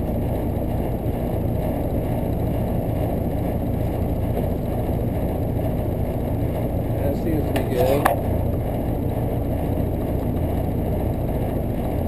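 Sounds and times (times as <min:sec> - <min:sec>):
air conditioner unit running: 0:00.0 - 0:12.0.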